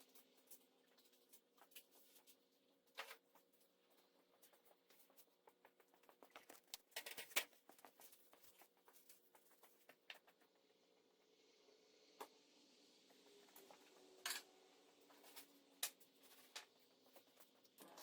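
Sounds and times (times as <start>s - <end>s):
faint clicks and taps: 0.4s - 10.6s.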